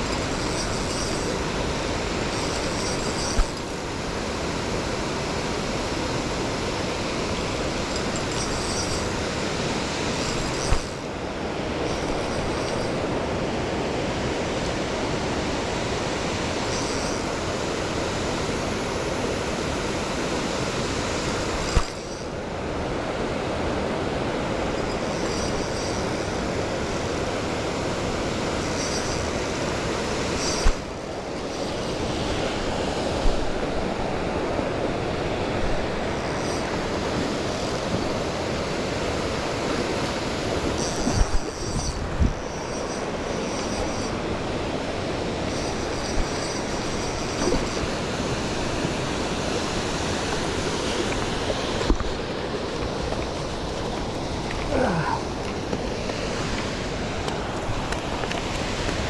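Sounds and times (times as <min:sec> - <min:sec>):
waterfall roaring: 0:43.9 - 0:59.0.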